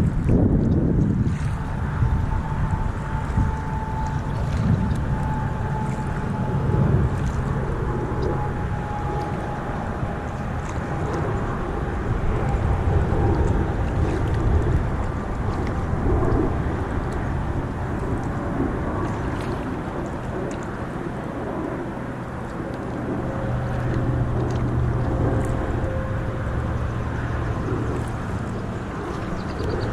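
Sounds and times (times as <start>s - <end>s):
water sounds from kayak: 0.0s - 29.9s
wind buffeting microphone: 0.0s - 29.9s.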